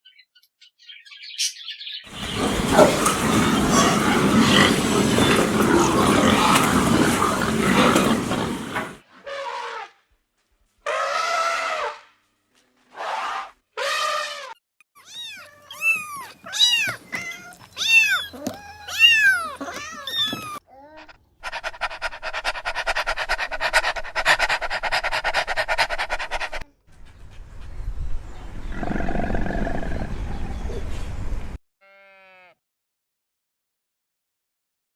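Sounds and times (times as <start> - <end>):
animal calls: 2.1 - 9.9, 13.0 - 27.3.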